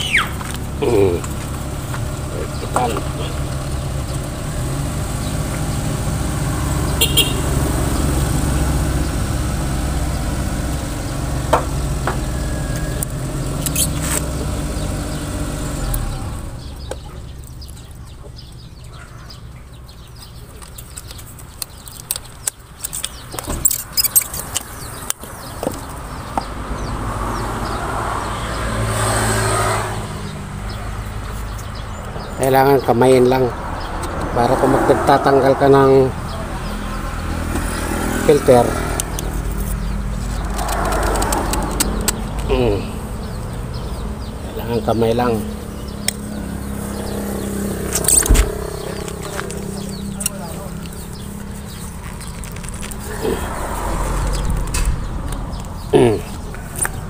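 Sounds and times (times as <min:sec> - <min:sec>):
diesel engine rumbling: 0:00.0 - 0:57.0.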